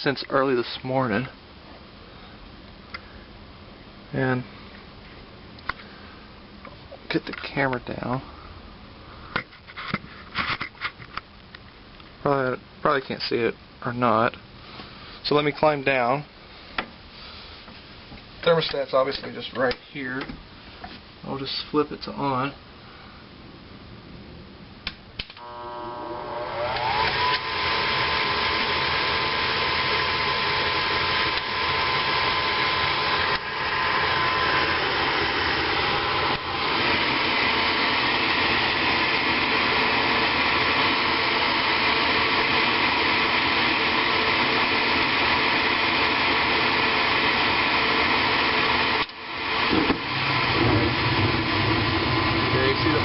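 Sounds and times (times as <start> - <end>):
burners rumbling: 49.6 - 53.0.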